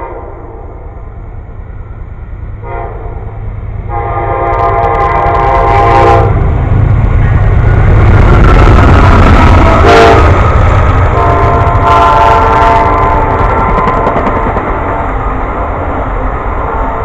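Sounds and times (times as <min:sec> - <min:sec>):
train horn blasts: 0:00.0 - 0:00.8, 0:02.6 - 0:06.5, 0:09.7 - 0:10.4, 0:11.1 - 0:13.8
train rumbling: 0:00.0 - 0:17.0.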